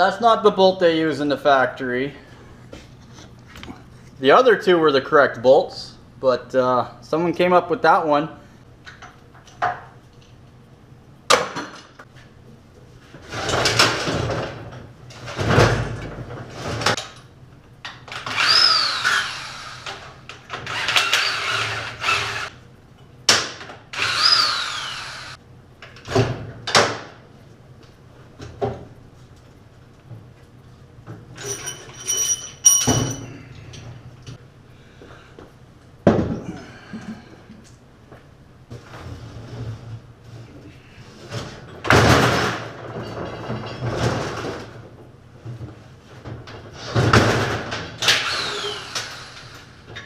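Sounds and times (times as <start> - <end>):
power tool whirring: 18.2 - 22.6, 23.9 - 25.4, 48.0 - 49.8
metallic clinks: 31.4 - 33.8
metal parts clanking: 31.4 - 33.9.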